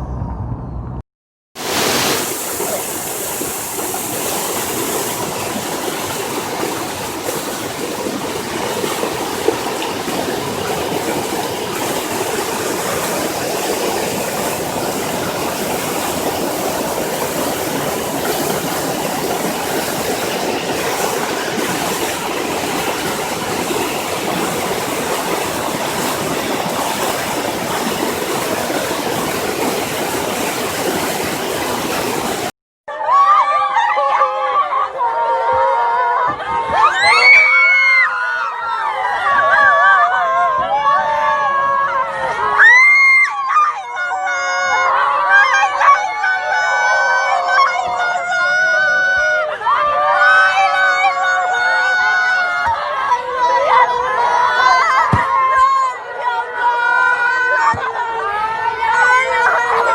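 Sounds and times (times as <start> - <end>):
rushing floodwater roar: 1.6 - 32.6.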